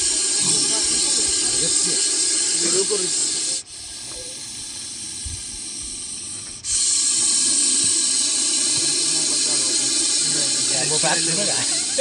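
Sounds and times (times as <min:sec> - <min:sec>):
snake hissing: 0:00.0 - 0:12.0.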